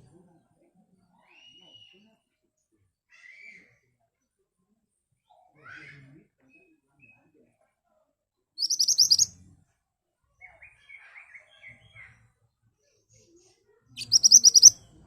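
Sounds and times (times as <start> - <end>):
bird singing sharp high notes: 8.6 - 9.3, 14.0 - 14.8
soft bird twittering: 8.6 - 9.3, 14.0 - 14.8.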